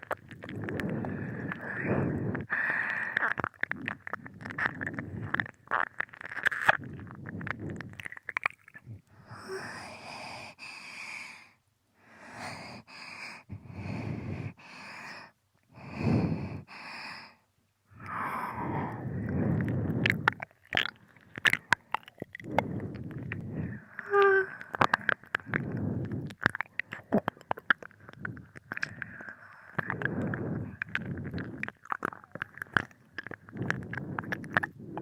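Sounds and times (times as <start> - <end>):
wet tongue and lip sounds: 0.0 - 10.6, 18.0 - 35.0
breaths: 0.4 - 5.5, 8.8 - 35.0.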